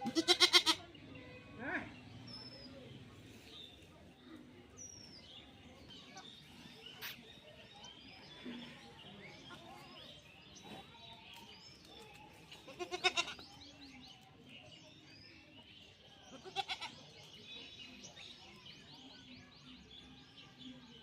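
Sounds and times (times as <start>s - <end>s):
goat bleating: 0.0s - 0.8s, 12.6s - 13.4s, 16.3s - 16.9s.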